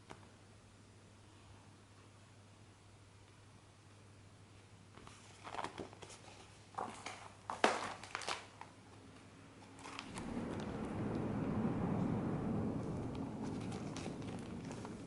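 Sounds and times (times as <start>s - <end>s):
cards and packaging rustling: 5.0s - 10.3s
low steady hum: 8.6s - 15.0s
steady rushing noise: 9.9s - 15.0s.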